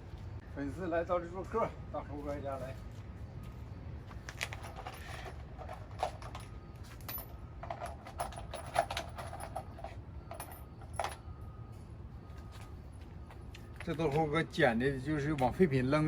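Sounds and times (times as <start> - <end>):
nails clinking and rattling: 4.3 - 11.3.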